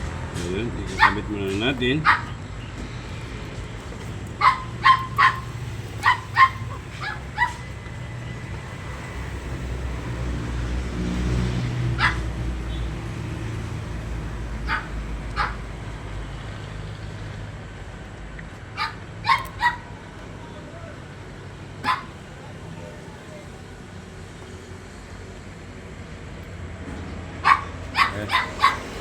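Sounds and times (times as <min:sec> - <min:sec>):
dog barking in sharp yaps: 0:01.0 - 0:01.3, 0:02.0 - 0:02.4, 0:04.4 - 0:07.7, 0:12.0 - 0:12.3, 0:14.6 - 0:15.6, 0:18.8 - 0:19.9, 0:21.8 - 0:22.2, 0:27.4 - 0:29.0.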